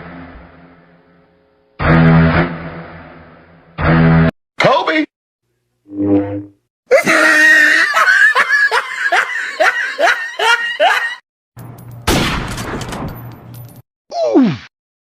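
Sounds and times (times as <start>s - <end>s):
tone sliding down in pitch: 5.9s - 6.6s
pulsing laugh: 6.9s - 11.2s.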